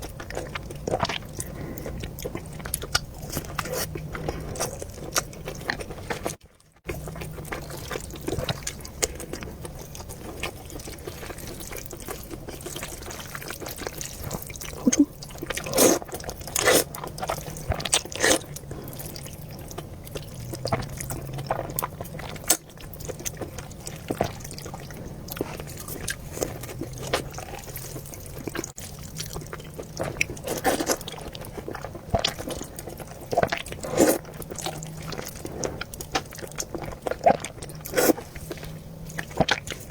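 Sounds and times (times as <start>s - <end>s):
chewing: 0.0s - 39.9s
low steady hum: 0.0s - 39.9s
slurping noodle soup: 10.2s - 19.2s, 30.0s - 31.1s, 33.4s - 38.7s.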